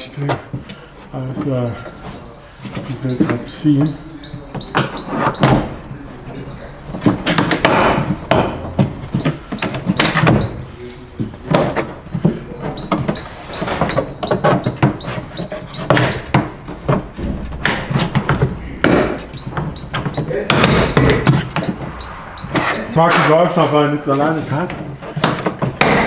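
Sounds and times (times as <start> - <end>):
plastic trim knocking and creaking: 11.2 - 22.7.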